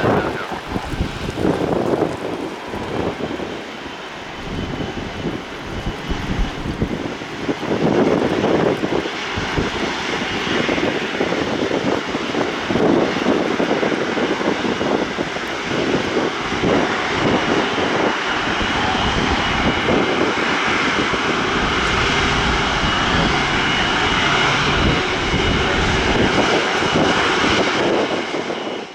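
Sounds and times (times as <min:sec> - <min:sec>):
jet engines roaring: 0:00.0 - 0:28.9
wind buffeting microphone: 0:00.0 - 0:28.9.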